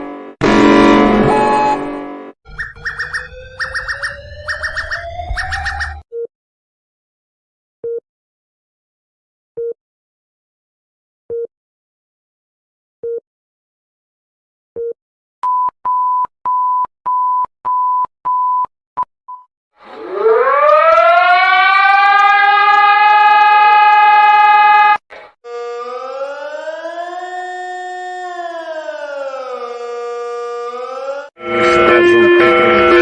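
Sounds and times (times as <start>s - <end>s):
rising and falling siren tone: 0.4s - 6.0s, 19.8s - 33.0s
siren winding up: 2.5s - 6.0s, 19.8s - 33.0s.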